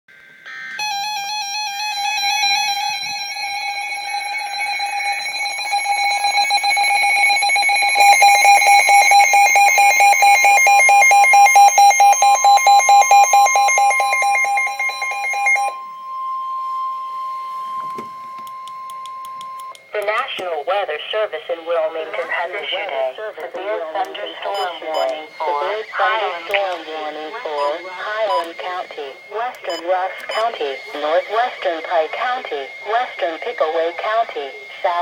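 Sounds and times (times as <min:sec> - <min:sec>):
electronic alarm warble: 0:00.3 - 0:19.9, 0:22.6 - 0:35.0
steady alert tone: 0:23.7 - 0:34.5.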